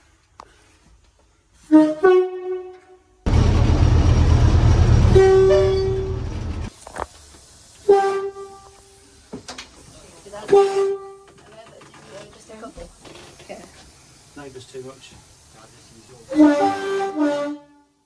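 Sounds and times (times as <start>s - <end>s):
train horn blasts: 1.6s - 6.7s, 16.3s - 17.9s
loud rumbling noise: 3.3s - 6.7s.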